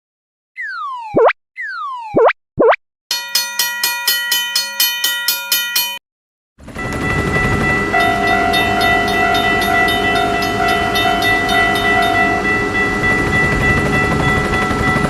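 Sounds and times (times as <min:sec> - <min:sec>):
train rumble and clatter: 0:06.6 - 0:15.0
train horn chord: 0:07.8 - 0:13.4.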